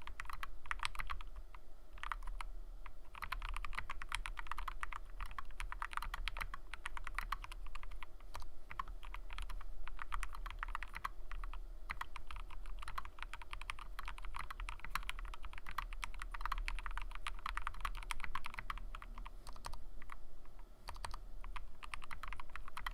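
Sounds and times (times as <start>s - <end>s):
fast typing on mechanical keyboard: 0.0s - 20.2s, 20.8s - 22.9s.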